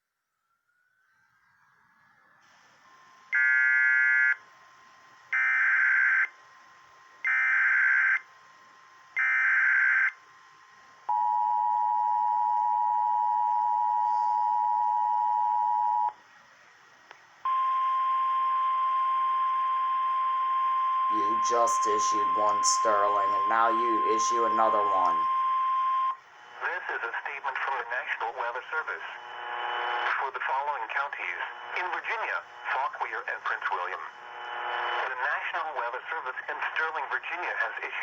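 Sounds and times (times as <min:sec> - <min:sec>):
two-tone attention signal: 0:21.1 - 0:26.2
steady alert tone: 0:21.2 - 0:25.2.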